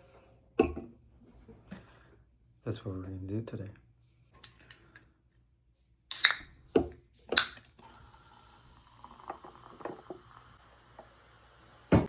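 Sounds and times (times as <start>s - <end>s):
faint steady hiss: 7.8s - 12.0s.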